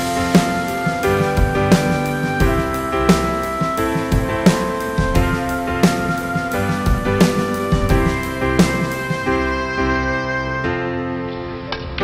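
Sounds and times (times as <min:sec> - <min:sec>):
steady drum beat: 0:00.0 - 0:09.5
held instrumental chords: 0:00.0 - 0:12.0.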